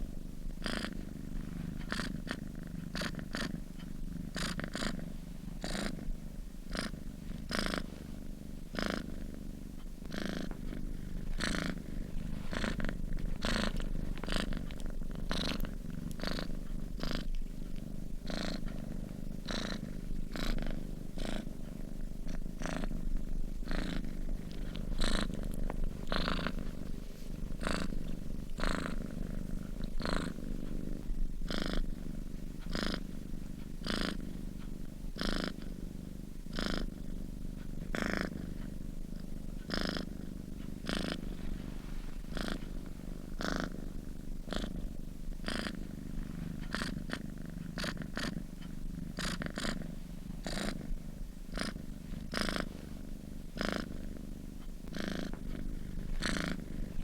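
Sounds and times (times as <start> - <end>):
cat purring: 0.0 - 57.0.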